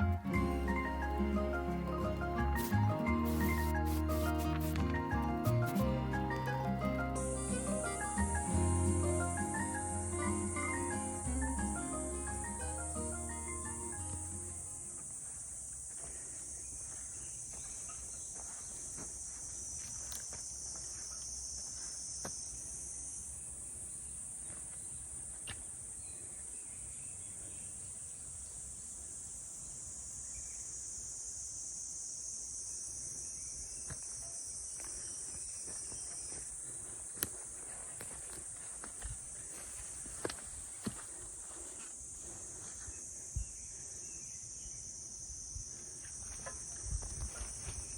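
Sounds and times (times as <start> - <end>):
high-pitched insect chorus: 0.0 - 47.9
lower insect buzzing: 2.0 - 16.0
faint scattered ticks: 7.2 - 23.5, 28.5 - 47.9.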